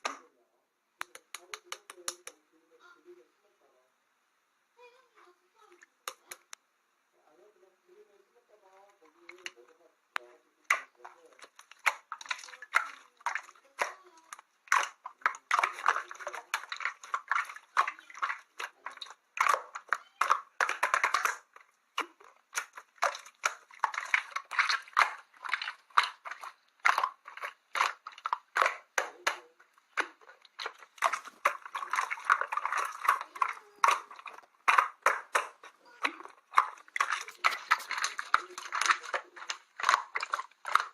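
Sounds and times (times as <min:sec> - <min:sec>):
slime squished by hand: 0:10.7 - 0:40.9.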